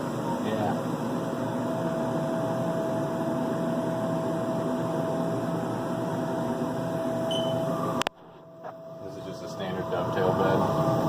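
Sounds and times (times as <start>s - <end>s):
constant whine: 0.0s - 11.0s.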